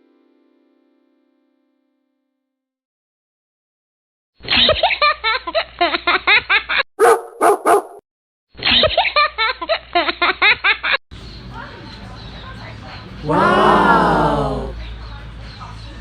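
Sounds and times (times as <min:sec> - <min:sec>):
dog barking: 0:07.0 - 0:08.0.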